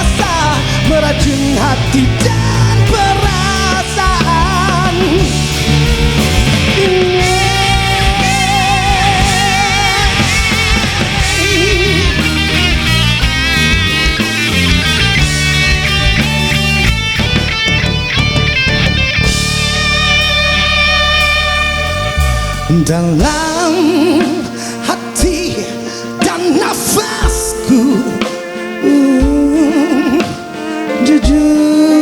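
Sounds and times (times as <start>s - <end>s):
band backing: 0.0s - 32.0s
lead guitar melody with vibrato: 0.0s - 32.0s.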